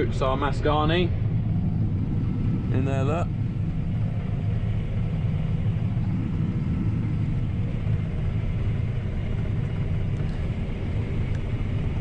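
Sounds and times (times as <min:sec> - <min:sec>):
combine harvester rumbling: 0:00.0 - 0:12.0.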